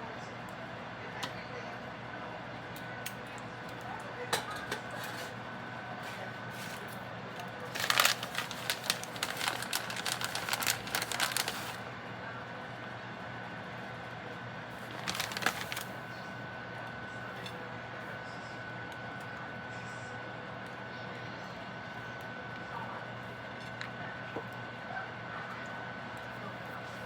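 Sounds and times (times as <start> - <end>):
rapid crinkling and clicking: 6.5 - 11.8, 14.8 - 16.0.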